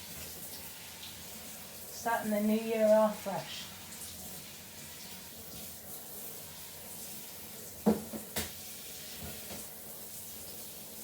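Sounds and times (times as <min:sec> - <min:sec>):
plastic part knocking against tub: 0:07.8 - 0:08.5.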